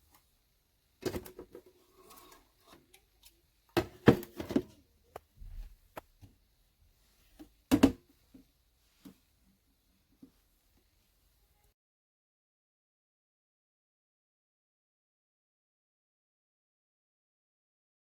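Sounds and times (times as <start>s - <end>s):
knocks and clunks of handling: 3.8s - 6.3s.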